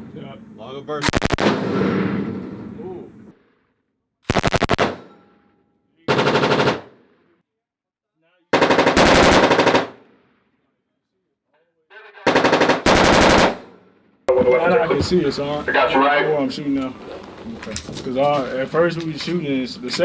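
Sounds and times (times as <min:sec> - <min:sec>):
machine gun firing bursts: 0:01.0 - 0:01.7, 0:04.3 - 0:05.0, 0:06.1 - 0:07.0, 0:08.5 - 0:10.1, 0:12.3 - 0:13.8
gunfire echo: 0:01.0 - 0:02.9, 0:04.3 - 0:05.4.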